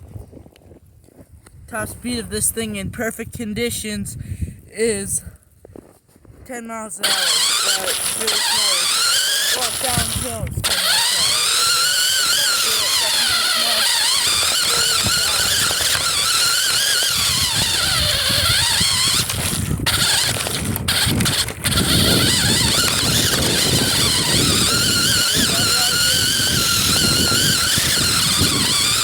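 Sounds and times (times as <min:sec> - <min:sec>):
wind rumble on microphone: 0:00.0 - 0:06.5, 0:09.8 - 0:10.8, 0:14.4 - 0:29.0
rc car motor and gears whining: 0:07.0 - 0:29.0.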